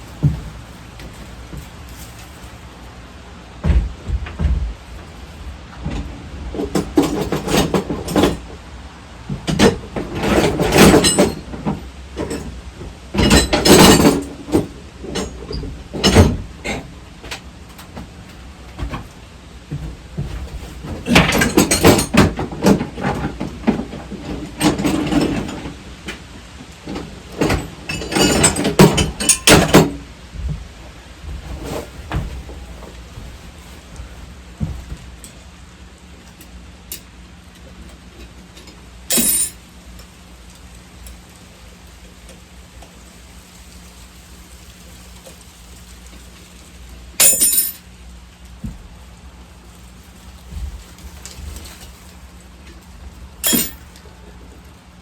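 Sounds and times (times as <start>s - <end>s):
metal parts clanking: 9.5s - 11.5s, 13.2s - 16.8s, 20.8s - 23.3s, 27.4s - 30.0s, 39.1s - 39.6s, 47.2s - 47.8s, 53.4s - 54.0s.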